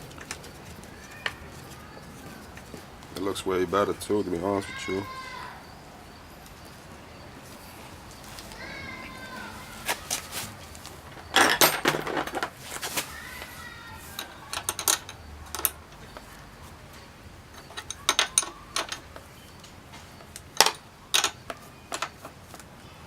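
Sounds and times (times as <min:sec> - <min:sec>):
plastic parts clicking and rattling: 0:10.1 - 0:13.1, 0:14.0 - 0:16.3, 0:17.5 - 0:22.7.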